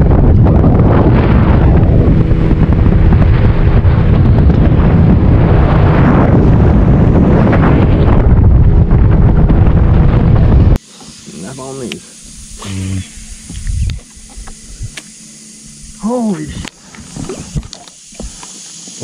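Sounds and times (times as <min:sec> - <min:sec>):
wind buffeting microphone: 0:00.0 - 0:10.8, 0:12.3 - 0:15.0
faint steady hum: 0:10.7 - 0:19.0.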